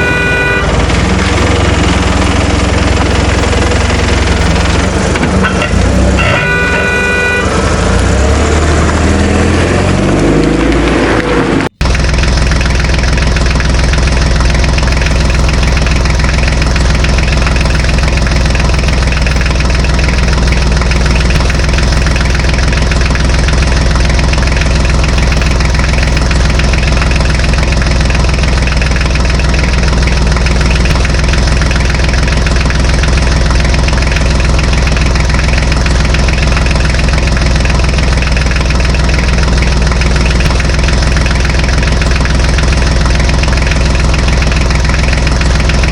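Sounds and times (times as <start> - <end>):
tractor engine idling: 0.0 - 45.9.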